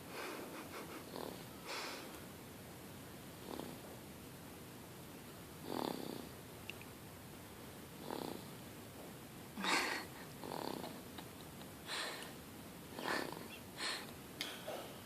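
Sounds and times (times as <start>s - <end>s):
baby snoring: 5.6s - 6.3s, 8.0s - 8.5s.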